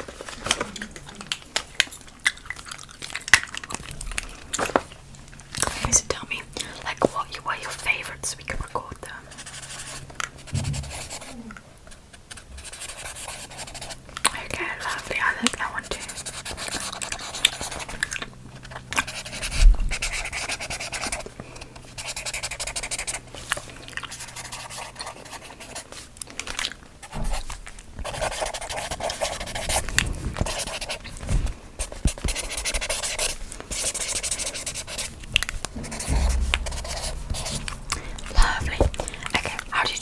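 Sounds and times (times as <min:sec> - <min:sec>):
scratchy rubbing: 0:31.8 - 0:40.0.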